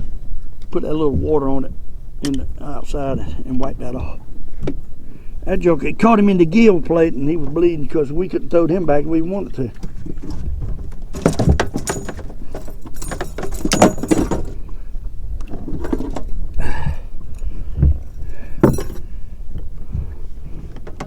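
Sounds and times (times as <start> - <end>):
dull knocks: 9.8 - 14.7, 17.7 - 19.1
gear rattling and clattering: 9.8 - 16.6, 17.8 - 19.1, 20.4 - 21.0.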